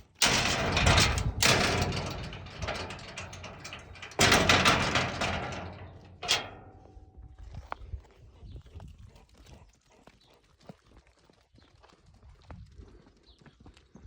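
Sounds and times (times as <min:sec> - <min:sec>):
metal gate rattling and scraping: 0:00.0 - 0:07.1.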